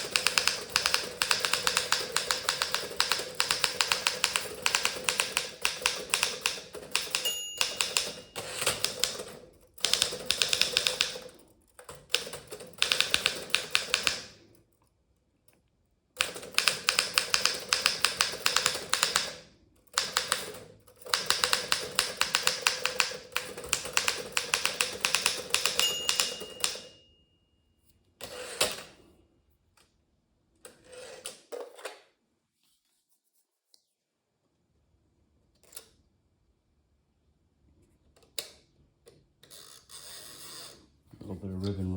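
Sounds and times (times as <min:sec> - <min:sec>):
typewriter margin bell: 0:00.0 - 0:11.2, 0:21.1 - 0:27.3
typewriter keystrokes: 0:00.0 - 0:14.4, 0:16.2 - 0:19.4, 0:20.0 - 0:26.9.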